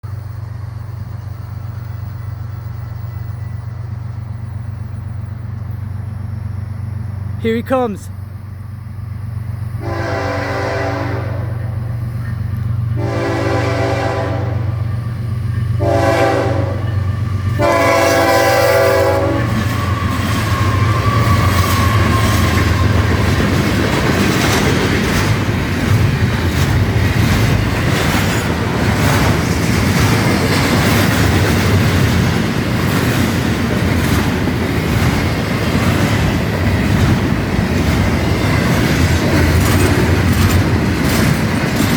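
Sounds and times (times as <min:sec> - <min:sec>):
locomotive engine rumble: 0:00.0 - 0:41.9
locomotive horn: 0:09.8 - 0:11.8, 0:12.9 - 0:14.9, 0:15.7 - 0:23.2
train wheels clacking over rail joints: 0:16.8 - 0:41.9.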